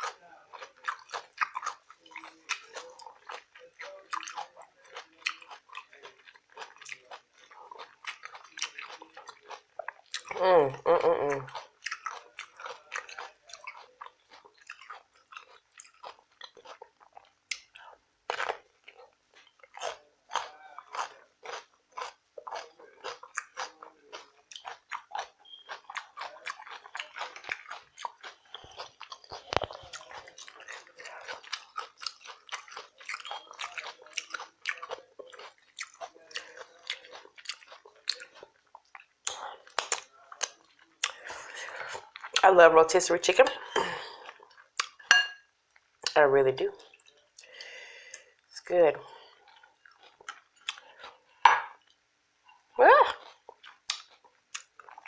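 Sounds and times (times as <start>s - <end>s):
wet chewing and lip-smacking: 0.0s - 42.5s, 43.7s - 46.2s, 46.8s - 55.0s
food crunching: 0.0s - 55.0s
person humming: 10.3s - 11.5s.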